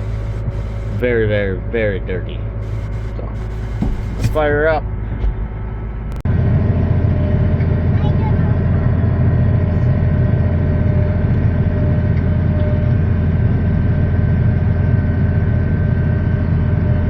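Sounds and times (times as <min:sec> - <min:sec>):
faint steady whine: 0:00.0 - 0:06.2
tractor engine running: 0:00.0 - 0:17.0.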